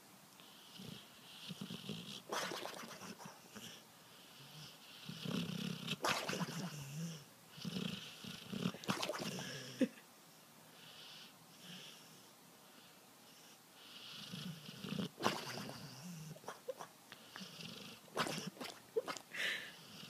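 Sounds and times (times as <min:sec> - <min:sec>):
dog snoring: 0:00.5 - 0:09.8, 0:13.3 - 0:18.7.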